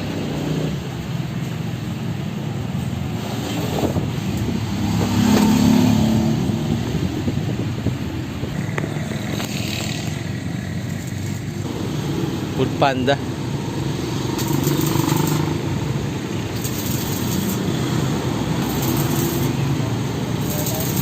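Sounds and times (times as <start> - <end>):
vehicle engine passing by: 3.1 - 7.8, 13.6 - 21.0.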